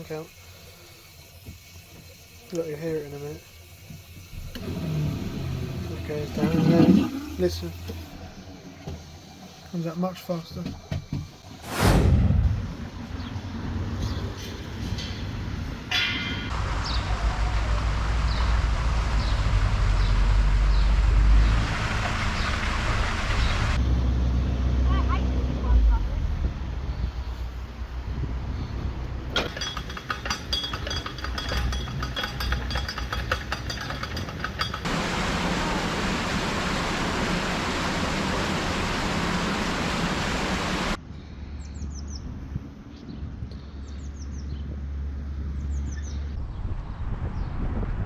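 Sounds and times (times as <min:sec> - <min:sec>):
loud rushing hiss: 0:34.8 - 0:41.0.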